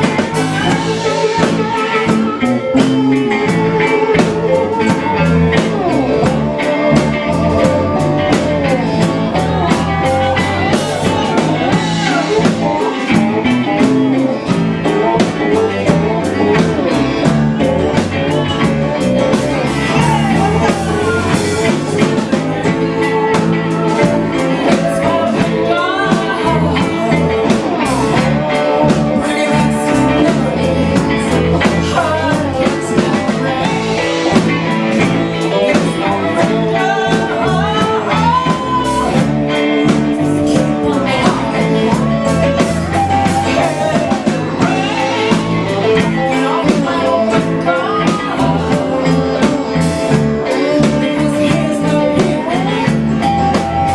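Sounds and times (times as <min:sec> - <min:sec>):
live band with singing: 0:00.0 - 0:53.9.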